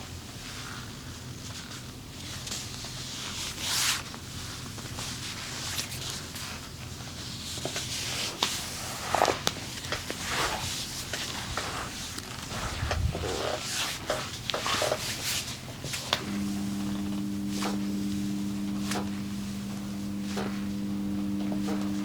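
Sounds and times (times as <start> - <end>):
faint low hum: 16.2 - 22.0.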